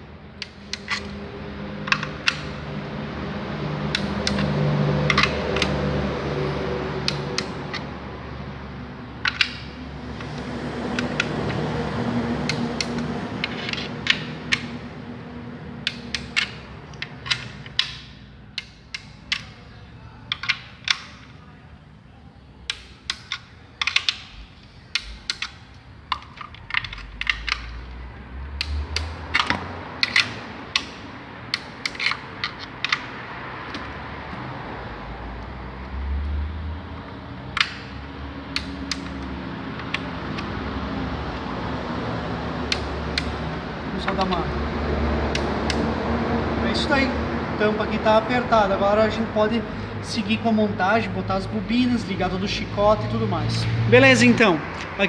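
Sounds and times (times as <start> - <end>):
torque wrench clicks: 1.8 - 2.6, 37.6 - 40.5.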